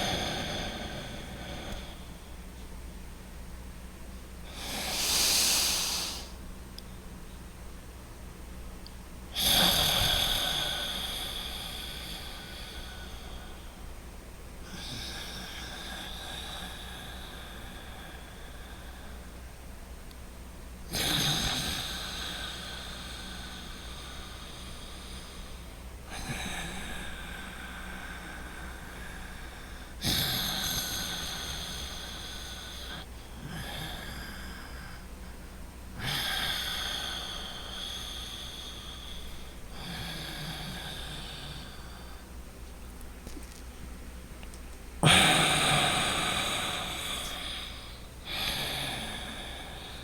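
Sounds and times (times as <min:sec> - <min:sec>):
loud breathing through nose: 0:00.0 - 0:02.4, 0:04.4 - 0:06.4, 0:09.4 - 0:13.8, 0:20.9 - 0:42.4, 0:45.0 - 0:50.0.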